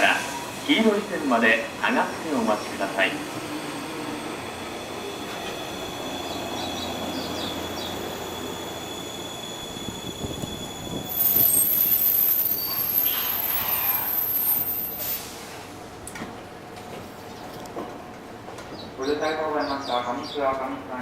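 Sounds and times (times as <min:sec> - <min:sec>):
train running noise: 0:00.0 - 0:21.0
high-pitched brake squeal: 0:03.4 - 0:15.5.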